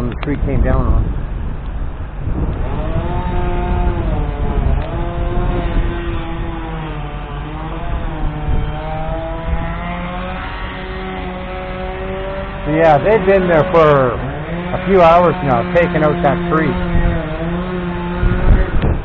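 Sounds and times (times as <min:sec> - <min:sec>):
low engine drone: 0:00.0 - 0:19.0
chainsaw cutting at high revs: 0:02.2 - 0:19.0.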